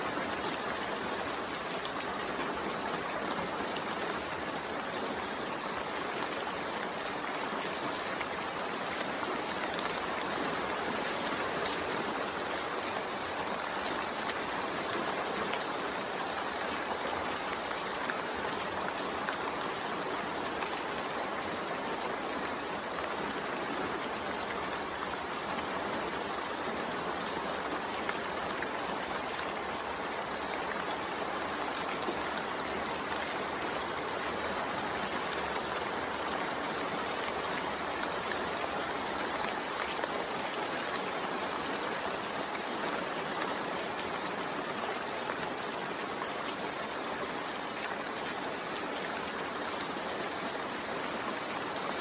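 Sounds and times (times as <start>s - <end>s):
steady rain falling: 0.0s - 52.0s.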